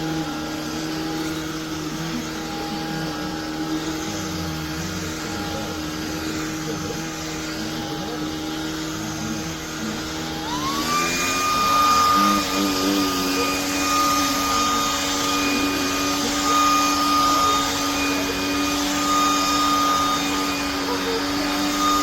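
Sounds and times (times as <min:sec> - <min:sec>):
stick vacuum running: 0:00.0 - 0:22.0.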